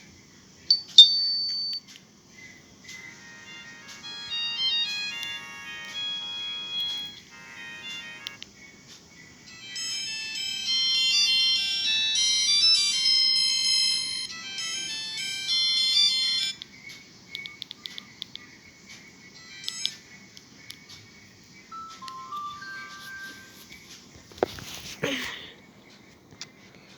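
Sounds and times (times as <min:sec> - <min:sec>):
phone ringtone melody: 0:02.9 - 0:08.4, 0:09.4 - 0:16.6, 0:19.4 - 0:20.2, 0:21.7 - 0:23.8.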